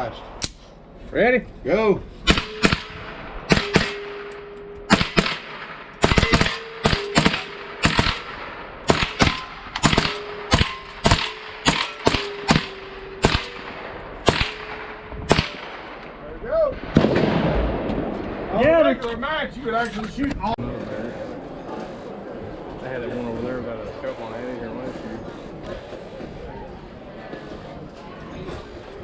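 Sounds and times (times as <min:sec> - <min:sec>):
single gunshots: 0:02.3 - 0:16.2, 0:16.8 - 0:18.6
faint steady ringing tone: 0:09.4 - 0:15.2.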